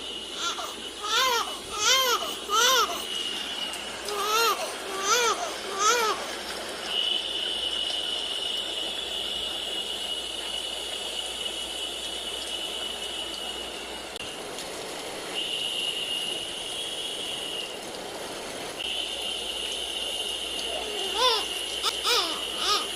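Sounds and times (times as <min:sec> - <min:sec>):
white noise hiss with high whine: 0:00.0 - 0:22.9
infant babbling: 0:00.4 - 0:03.1, 0:04.1 - 0:06.4, 0:20.7 - 0:22.9.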